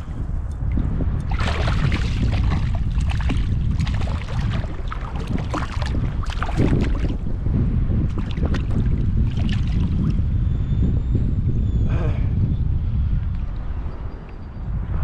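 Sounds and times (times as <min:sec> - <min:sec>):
wind rumble on microphone: 0:00.0 - 0:15.0
river water splashing: 0:01.3 - 0:07.2.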